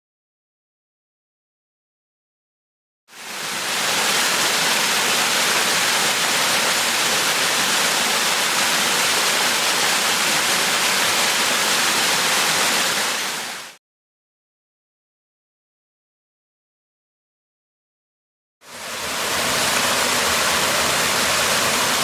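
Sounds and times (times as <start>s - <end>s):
waterfall rushing: 3.1s - 13.8s, 18.7s - 22.0s.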